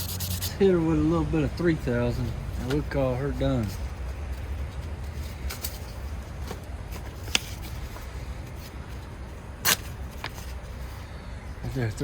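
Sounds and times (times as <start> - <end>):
sandpaper scratching on blade: 0.0 - 0.6
low steady rumble: 0.0 - 12.0.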